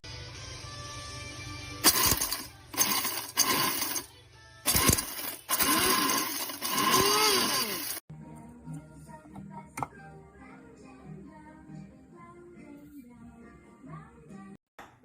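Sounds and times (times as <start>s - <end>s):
coffee grinder motor pulsing: 1.8s - 4.1s, 4.7s - 8.0s.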